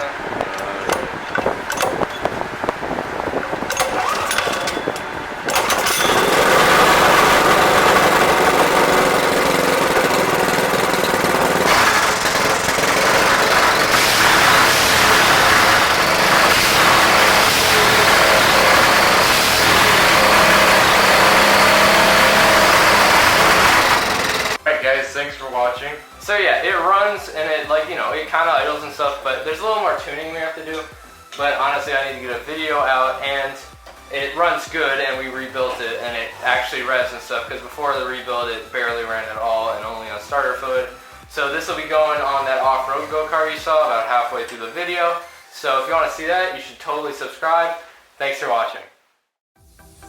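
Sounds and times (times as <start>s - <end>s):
small engine sputtering and running: 3.7s - 24.6s.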